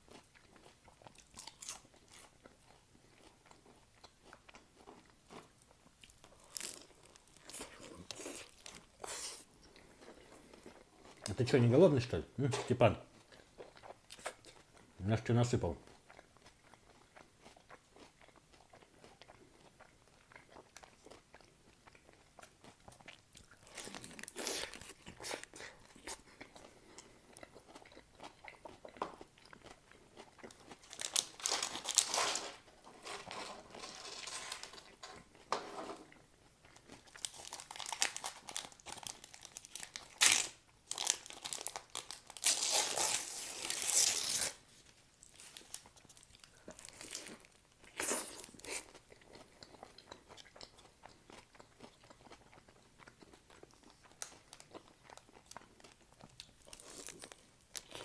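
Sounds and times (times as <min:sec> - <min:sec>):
wet crunchy chewing: 0:00.0 - 0:11.3, 0:15.8 - 0:44.5, 0:45.2 - 0:58.0
biting into a wrap: 0:00.2 - 0:11.4, 0:15.9 - 0:35.5, 0:36.1 - 0:44.6.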